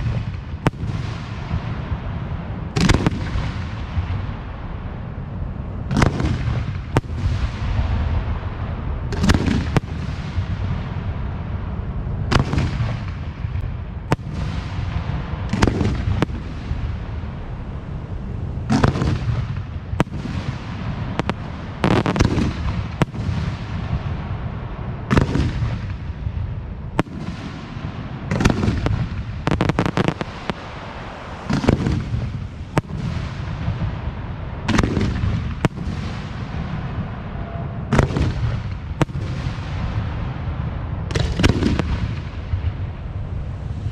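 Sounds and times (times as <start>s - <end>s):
firework cracks: 0.0s - 1.9s, 2.8s - 4.2s, 9.1s - 11.0s, 18.7s - 24.5s, 25.1s - 26.2s, 27.0s - 36.9s, 37.9s - 40.3s, 41.1s - 42.9s
firework shells booming: 0.0s - 4.4s, 18.7s - 37.1s, 37.9s - 40.5s, 41.1s - 42.8s
echoing rumble: 0.0s - 43.9s.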